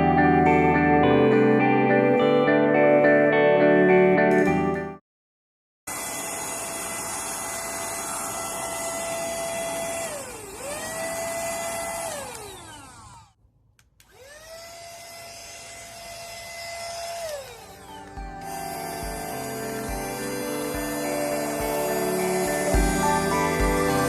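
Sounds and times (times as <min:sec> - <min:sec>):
vacuum cleaner motor whine: 0:05.9 - 0:13.4, 0:14.0 - 0:24.0.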